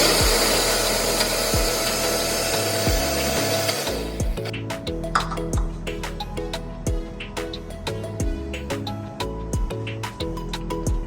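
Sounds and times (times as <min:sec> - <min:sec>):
deep kick drum: 0:00.0 - 0:00.8, 0:01.4 - 0:02.0, 0:02.7 - 0:03.4, 0:04.2 - 0:04.6, 0:05.2 - 0:05.9, 0:06.9 - 0:07.3, 0:08.1 - 0:08.7, 0:09.5 - 0:10.0
electronic music: 0:00.0 - 0:11.0.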